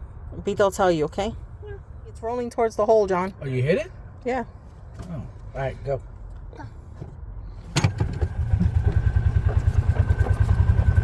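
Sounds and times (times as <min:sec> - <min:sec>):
golf cart pulsing drive sound: 0:07.7 - 0:11.0.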